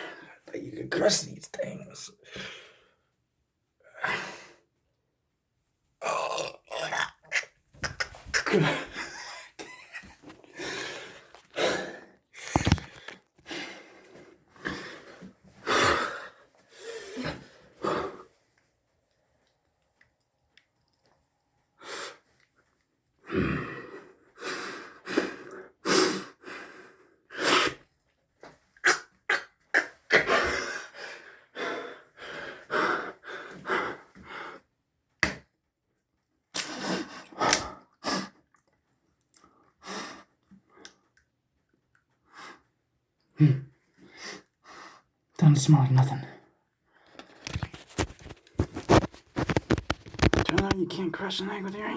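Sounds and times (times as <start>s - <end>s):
man breathing hard and straining: 10.4s - 18.4s.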